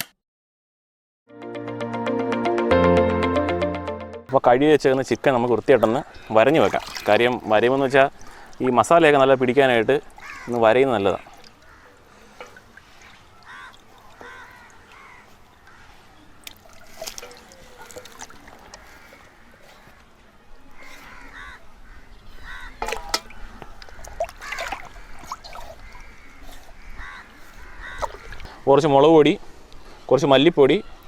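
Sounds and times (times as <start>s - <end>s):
crows cawing: 10.2s - 16.0s, 18.4s - 20.0s, 20.8s - 28.6s.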